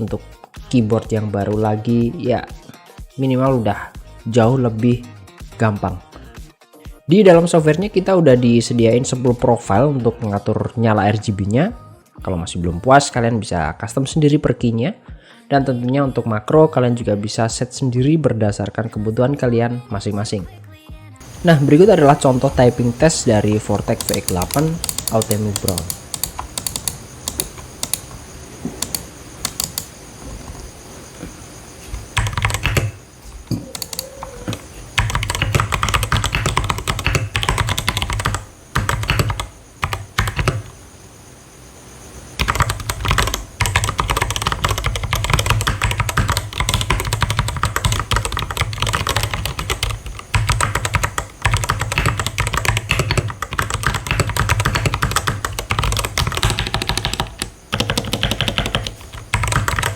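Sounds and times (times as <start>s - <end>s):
mechanical keyboard typing: 21.6s - 28.2s, 28.8s - 30.0s, 32.1s - 40.7s, 42.4s - 59.9s.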